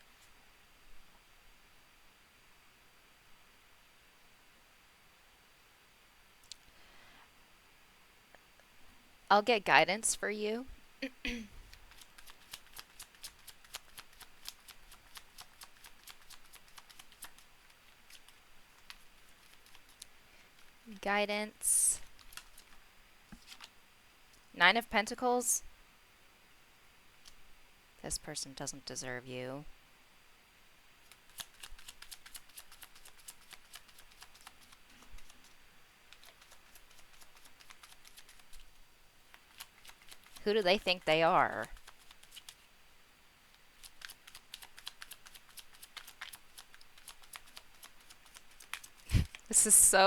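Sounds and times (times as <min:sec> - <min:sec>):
cards being shuffled: 0:11.7 - 0:20.7, 0:23.4 - 0:23.7, 0:31.1 - 0:38.7, 0:41.7 - 0:42.6, 0:43.8 - 0:49.5.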